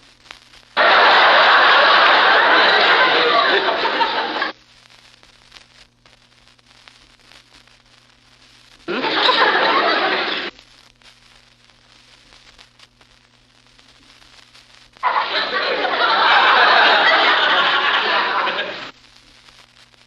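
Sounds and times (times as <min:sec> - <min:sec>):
recording crackle: 0:00.0 - 0:20.0
studio audience laughter: 0:00.8 - 0:04.5, 0:08.9 - 0:10.5, 0:15.0 - 0:18.9.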